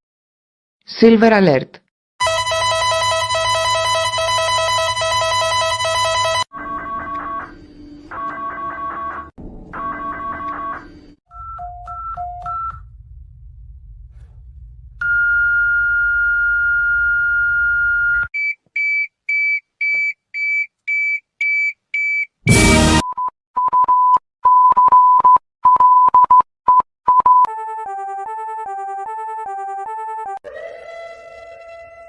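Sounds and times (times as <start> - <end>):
low hum: 12.7 - 15.0.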